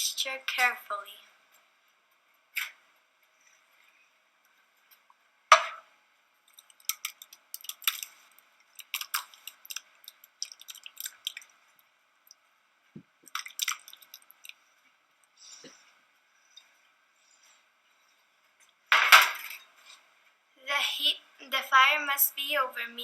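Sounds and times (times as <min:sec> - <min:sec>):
hot oil crackling and popping: 0:06.4 - 0:15.4.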